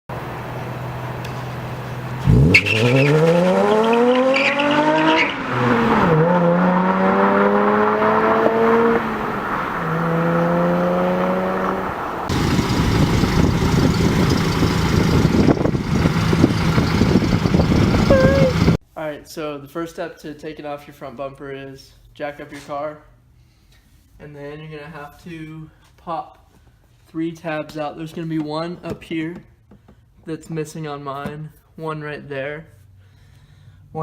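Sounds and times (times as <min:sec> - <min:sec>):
car engine revving: 0:00.7 - 0:18.8.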